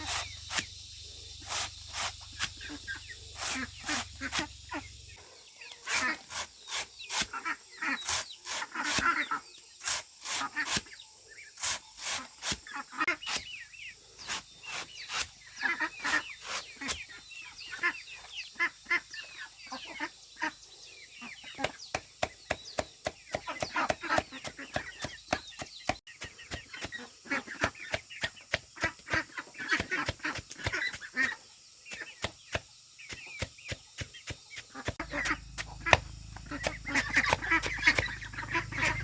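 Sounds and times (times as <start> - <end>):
sharp irregular knocks: 21.6 - 26.0
chickens clucking: 22.6 - 32.3, 33.1 - 39.0.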